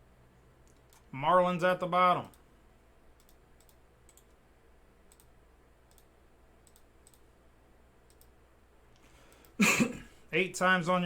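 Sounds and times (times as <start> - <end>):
low room noise: 0.0 - 11.0
computer mouse clicks: 0.6 - 1.1, 3.2 - 4.4, 5.1 - 7.3, 8.0 - 9.6.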